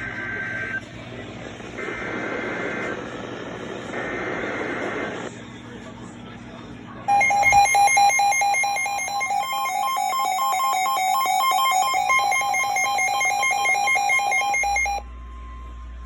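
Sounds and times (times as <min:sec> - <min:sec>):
two-pitch electronic alarm beeping: 0:07.1 - 0:15.0.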